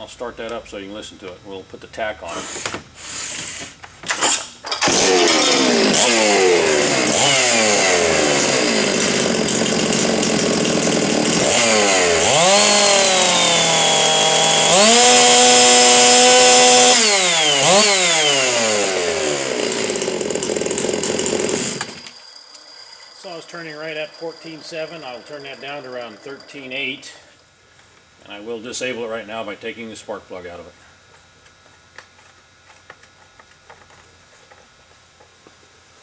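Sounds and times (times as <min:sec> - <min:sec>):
chainsaw revving: 0:02.2 - 0:22.2, 0:23.2 - 0:27.4.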